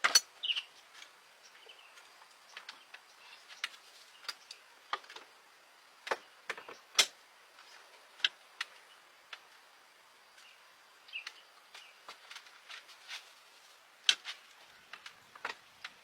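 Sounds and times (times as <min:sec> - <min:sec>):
sharp clicks and light knocks: 0:00.0 - 0:05.4, 0:14.0 - 0:16.0.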